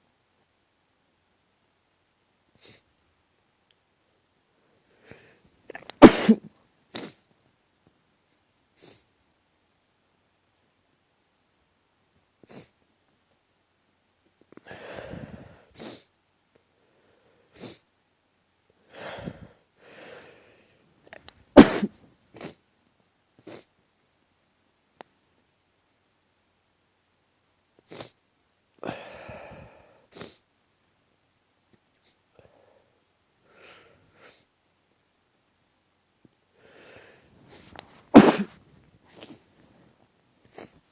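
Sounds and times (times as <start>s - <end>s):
person sniffing: 2.6s - 2.8s, 5.0s - 7.2s, 8.8s - 9.1s, 12.5s - 12.8s, 14.7s - 16.1s, 17.5s - 17.8s, 21.6s - 22.6s, 23.4s - 23.7s, 27.8s - 28.2s, 28.8s - 30.4s, 33.5s - 34.5s, 36.6s - 39.4s, 40.5s - 40.8s
person sneezing: 5.7s - 7.2s, 21.6s - 22.6s, 37.5s - 39.4s
person breathing in: 14.6s - 16.0s, 18.9s - 20.8s, 28.8s - 30.4s, 36.6s - 38.4s.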